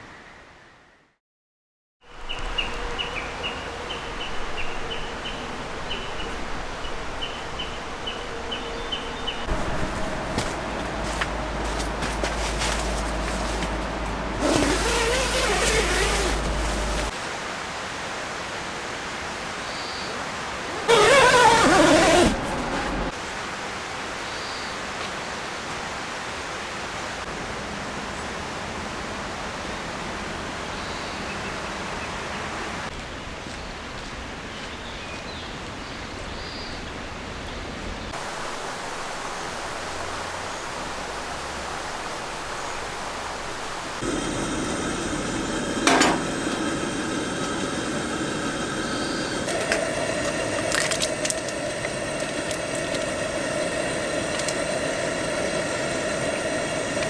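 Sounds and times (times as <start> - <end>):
river flowing: 9.4 - 17.2, 43.2 - 57.0.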